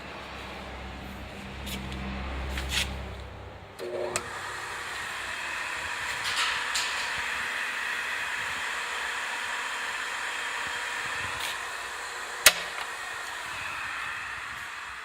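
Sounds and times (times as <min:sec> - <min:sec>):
drill grinder whirring: 0:03.8 - 0:15.0.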